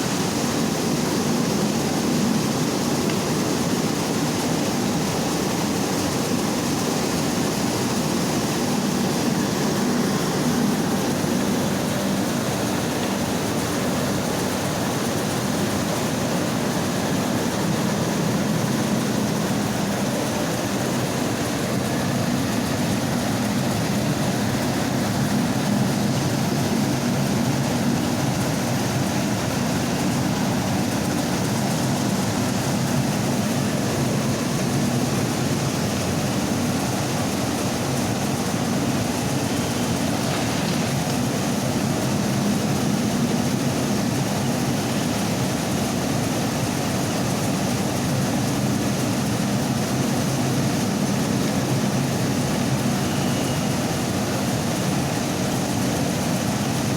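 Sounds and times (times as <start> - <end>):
rice milling machine humming: 0.0 - 56.9
rushing hiss of grain: 35.0 - 43.2.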